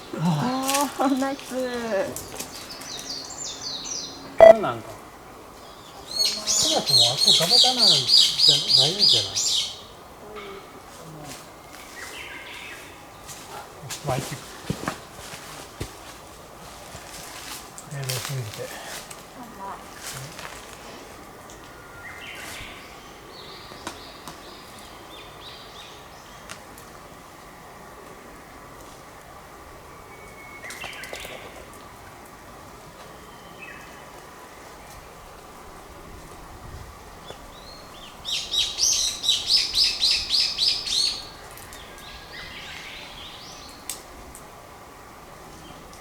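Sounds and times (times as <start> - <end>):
songbird singing: 0.0 - 10.7, 21.5 - 26.5, 30.0 - 31.9, 33.0 - 35.2, 37.0 - 44.5
bird singing high notes: 4.4 - 4.6.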